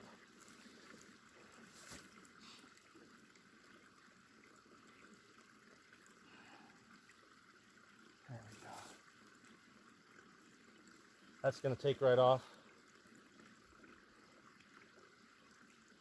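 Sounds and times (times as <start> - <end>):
faint steady hiss: 0.0 - 3.5.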